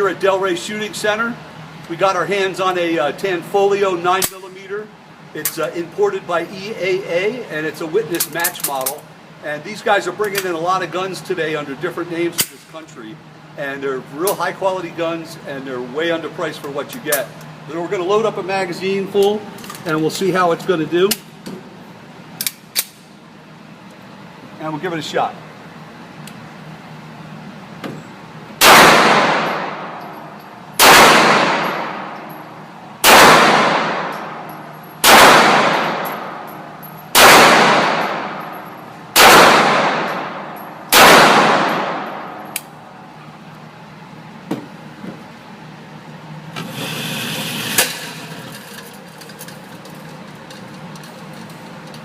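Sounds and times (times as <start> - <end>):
pistol shots echoing: 28.6 - 30.0, 30.8 - 32.2, 33.0 - 36.5, 37.1 - 42.5.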